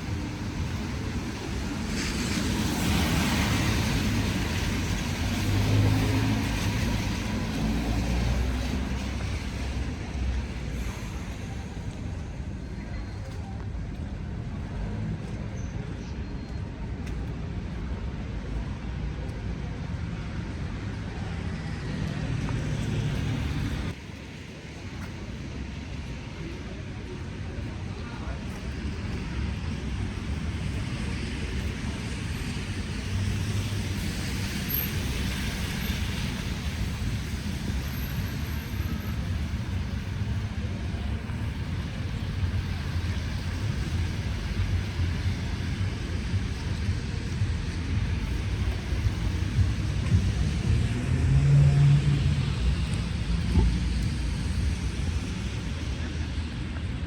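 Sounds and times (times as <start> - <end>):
low rumble of city traffic: 0.0 - 57.0.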